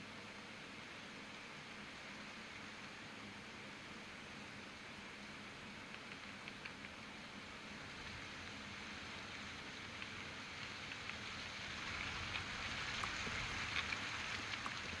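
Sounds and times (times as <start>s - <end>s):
steady outdoor hiss: 0.0s - 15.0s
faint ticks: 5.2s - 7.3s, 9.1s - 15.0s.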